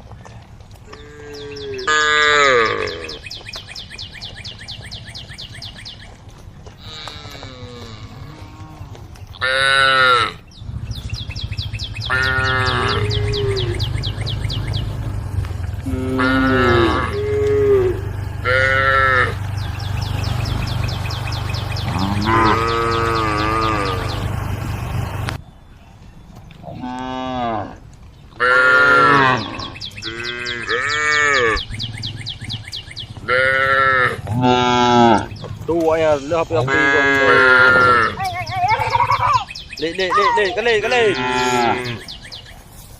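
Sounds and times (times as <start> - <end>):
cattle bawling: 0.9 - 3.2, 6.8 - 10.4, 11.4 - 25.4, 28.4 - 42.1
low rumble: 10.5 - 25.4
rapid high chirps: 17.0 - 25.4.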